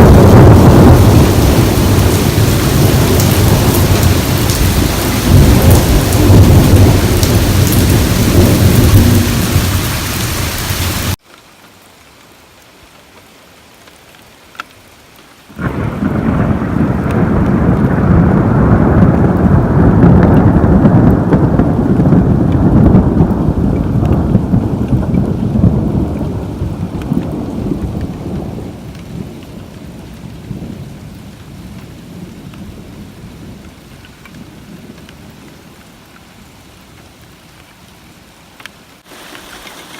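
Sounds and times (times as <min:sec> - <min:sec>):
close thunderclap rumbling: 0:00.0 - 0:11.2, 0:15.6 - 0:33.6
rolling thunder: 0:00.0 - 0:11.2, 0:15.6 - 0:30.9
heavy rain: 0:00.0 - 0:39.9.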